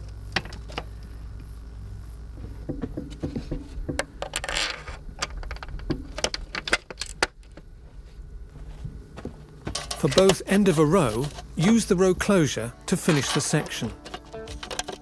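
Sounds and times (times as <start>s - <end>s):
steady low hum: 0.0s - 15.0s
metal hardware clinking: 9.7s - 11.9s, 12.8s - 15.0s
metal scrape: 12.9s - 15.0s.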